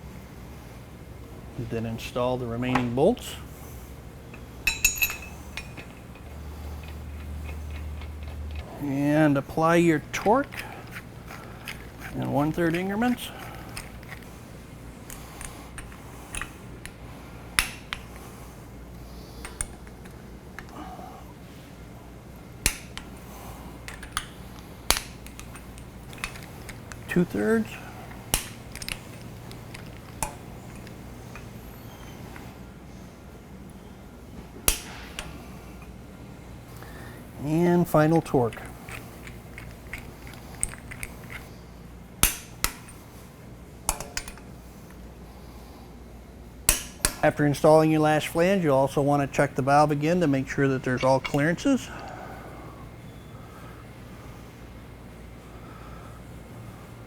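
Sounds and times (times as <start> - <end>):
torque wrench clicking on bolts: 15.0 - 17.0, 19.4 - 20.7, 23.8 - 31.5, 37.9 - 41.5.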